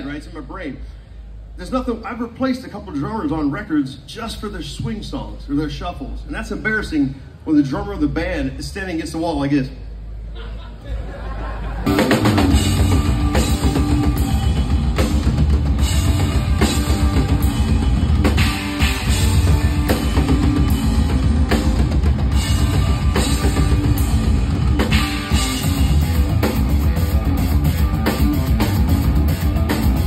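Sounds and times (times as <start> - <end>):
drum kit rock groove: 11.8 - 30.0
loud rock music: 11.9 - 30.0.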